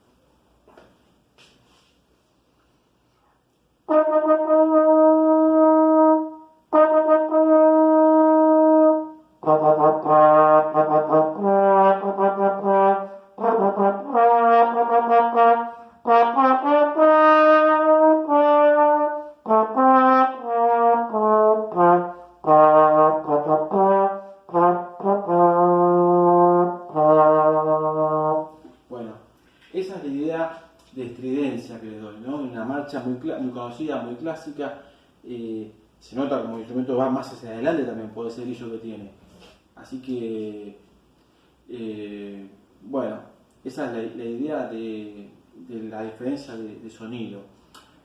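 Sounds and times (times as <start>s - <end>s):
trombone playing a march: 3.9s - 28.6s.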